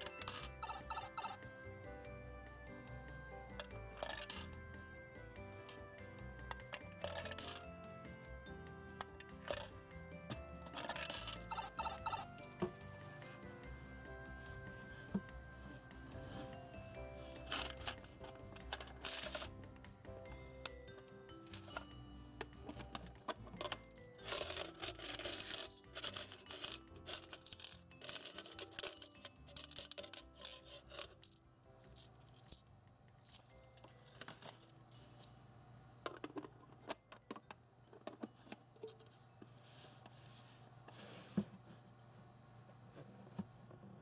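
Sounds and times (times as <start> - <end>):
coins clinking into piggy bank: 0.0 - 1.6, 3.5 - 4.8, 5.5 - 13.5, 17.2 - 19.7, 20.6 - 32.6, 33.2 - 35.3.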